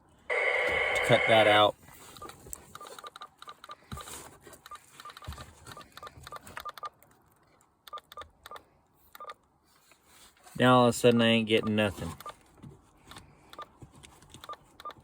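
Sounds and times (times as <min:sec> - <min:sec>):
radio electronic beeps and clicks: 0:00.3 - 0:04.1.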